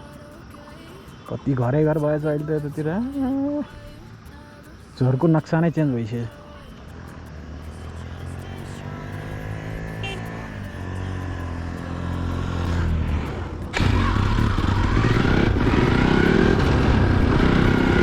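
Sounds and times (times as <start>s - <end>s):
motorcycle engine running: 6.8s - 18.0s
rough rushing noise: 9.4s - 18.0s.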